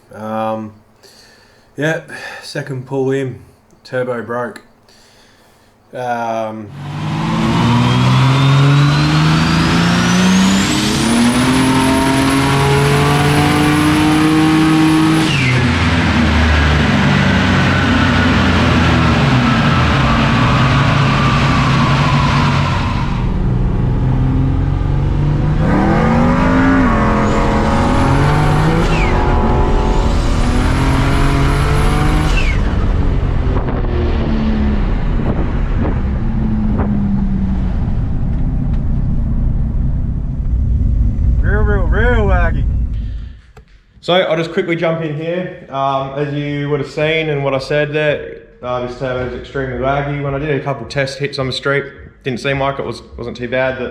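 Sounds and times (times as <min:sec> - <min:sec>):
car engine revving: 0:06.7 - 0:43.4.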